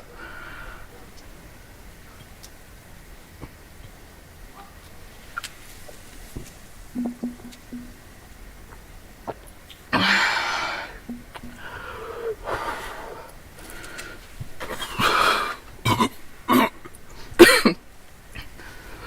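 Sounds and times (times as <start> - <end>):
soft throat sounds: 7.0 - 8.1, 8.7 - 13.2
person coughing: 17.4 - 17.8.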